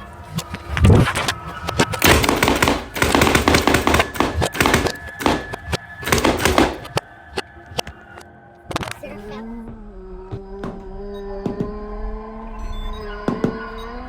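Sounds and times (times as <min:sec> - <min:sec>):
sharp bangs and crackles: 0:00.2 - 0:09.0.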